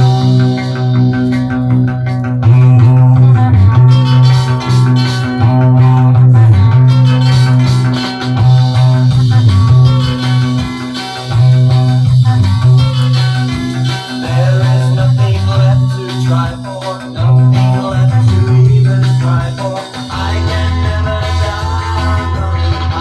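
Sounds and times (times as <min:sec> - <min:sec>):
bass guitar: 0:00.0 - 0:23.0
drums: 0:00.0 - 0:23.0
electric guitars: 0:00.0 - 0:23.0.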